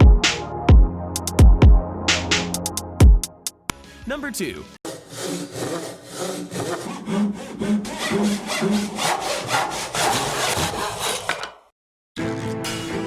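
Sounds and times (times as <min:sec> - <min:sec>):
music: 0:00.0 - 0:04.8, 0:12.2 - 0:13.0
hand saw cutting wood: 0:04.8 - 0:12.5.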